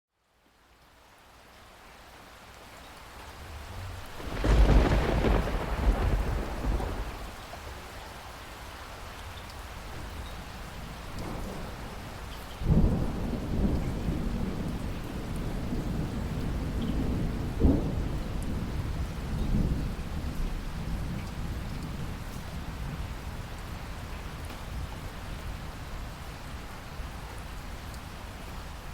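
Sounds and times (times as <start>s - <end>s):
heavy rain: 0.1s - 28.9s
thunder claps rumbling: 4.2s - 7.9s, 10.8s - 21.2s.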